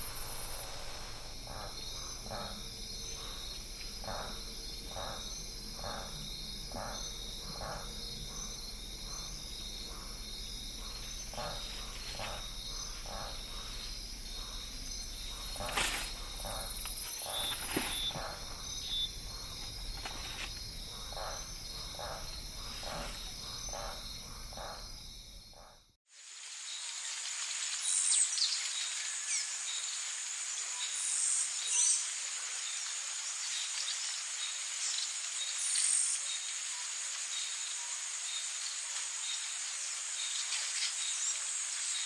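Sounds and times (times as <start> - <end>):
insects trilling: 0.0 - 25.8
bird chirps: 10.9 - 20.2.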